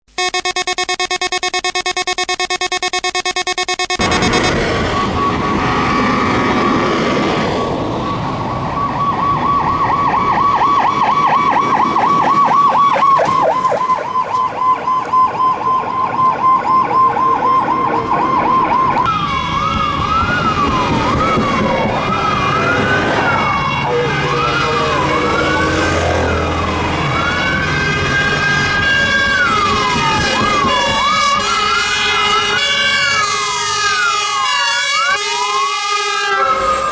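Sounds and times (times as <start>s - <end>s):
steady horn-like tone: 4.0s - 8.9s
fire engine siren wailing: 4.0s - 36.9s
truck engine rumble: 4.0s - 36.9s.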